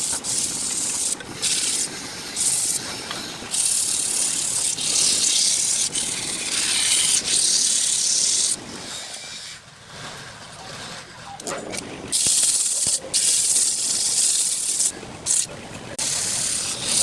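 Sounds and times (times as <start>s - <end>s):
sandpaper on turning wood: 0.0s - 8.6s, 12.2s - 17.0s.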